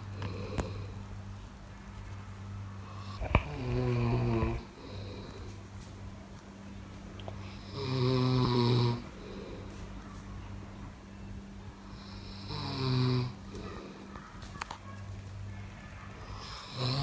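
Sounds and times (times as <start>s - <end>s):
person snoring: 3.0s - 5.6s, 7.5s - 9.7s, 16.4s - 17.0s.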